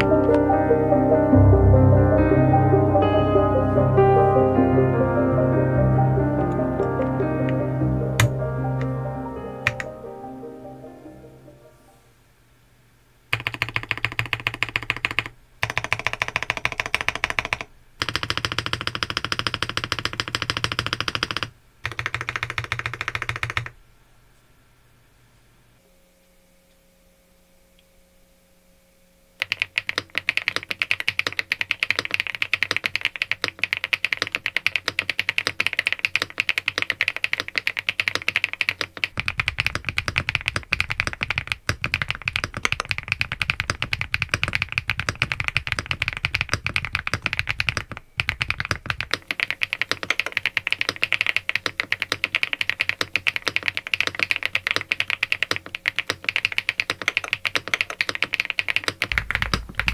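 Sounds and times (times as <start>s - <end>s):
mechanical keyboard typing: 9.6s - 9.9s, 13.3s - 23.8s, 29.4s - 59.9s.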